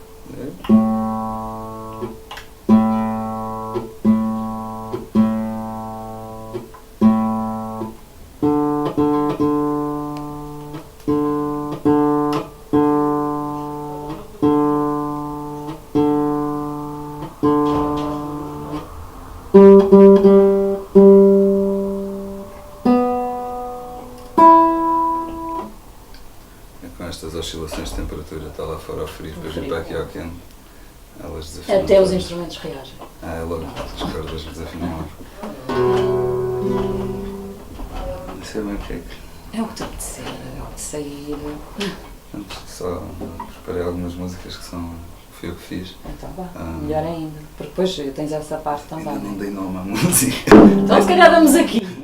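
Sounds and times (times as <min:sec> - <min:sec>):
guitar chords strummed: 0:00.0 - 0:26.6, 0:33.2 - 0:43.7, 0:49.9 - 0:52.0
guitar notes plucked: 0:00.0 - 0:26.6, 0:33.0 - 0:43.8, 0:49.9 - 0:52.0.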